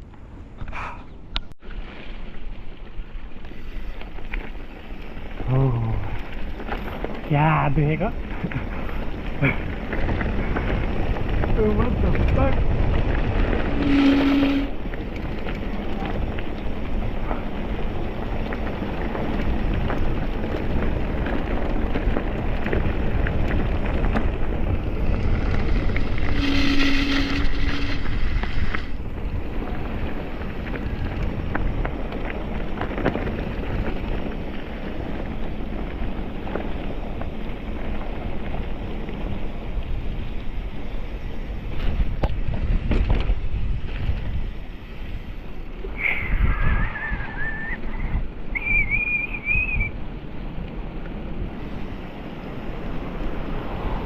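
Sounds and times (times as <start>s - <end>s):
wind rushing over microphone: 5.2s - 54.0s
whistle-like tone: 13.8s - 14.7s, 46.0s - 50.0s.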